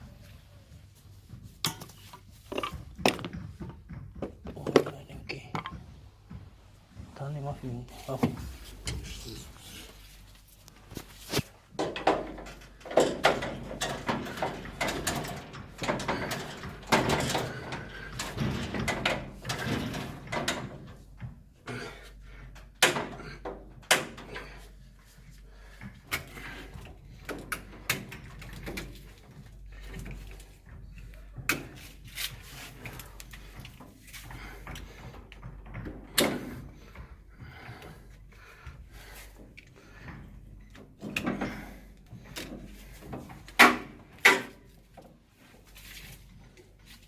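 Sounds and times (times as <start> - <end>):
clatter of knocks and clicks: 1.6 - 6.6, 11.3 - 21.8, 25.7 - 45.2.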